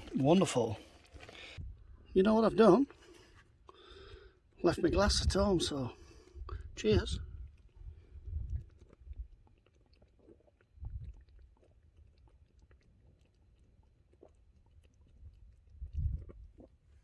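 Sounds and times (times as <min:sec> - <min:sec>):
person chewing food: 0:07.4 - 0:17.0.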